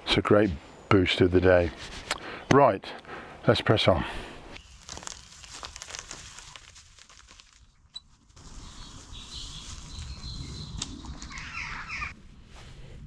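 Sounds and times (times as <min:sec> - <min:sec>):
bicycle tyres on dirt path: 0:04.5 - 0:11.8
bird calling: 0:08.5 - 0:12.2.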